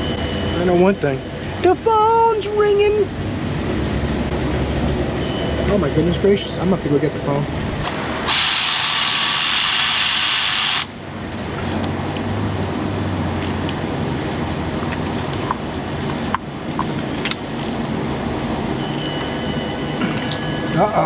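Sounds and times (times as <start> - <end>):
shop background hum: 0.0 - 21.0
loud hiss: 8.2 - 10.9
telephone ringing: 18.8 - 21.0.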